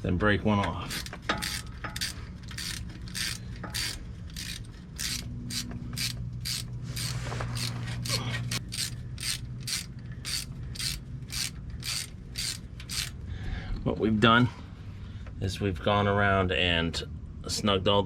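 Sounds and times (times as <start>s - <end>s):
hand ratchet clicking: 0.9s - 13.2s.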